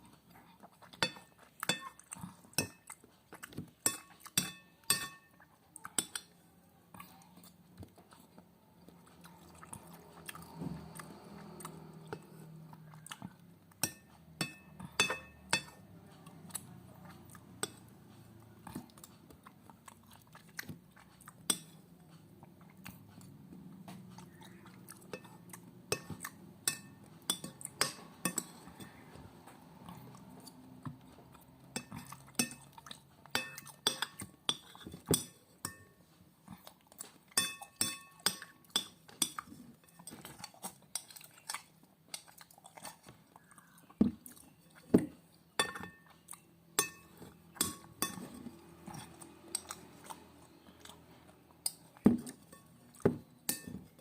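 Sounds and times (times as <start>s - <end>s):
chewing: 0.0s - 54.0s
cutlery clinking on a plate: 3.8s - 5.3s, 13.8s - 15.8s, 33.3s - 35.9s, 37.4s - 40.5s, 45.6s - 46.2s, 46.8s - 49.8s, 51.7s - 53.9s.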